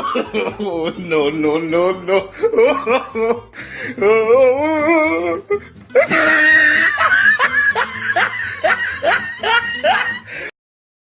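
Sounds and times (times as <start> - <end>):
shrill scream: 6.0 - 7.5.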